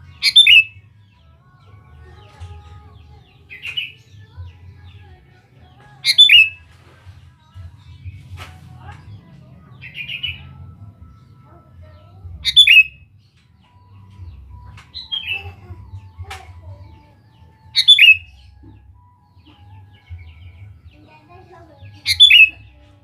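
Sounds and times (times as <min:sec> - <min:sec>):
bulbul calling: 0:00.0 - 0:00.9, 0:06.0 - 0:06.7, 0:12.4 - 0:13.1, 0:17.7 - 0:19.0, 0:21.9 - 0:22.8.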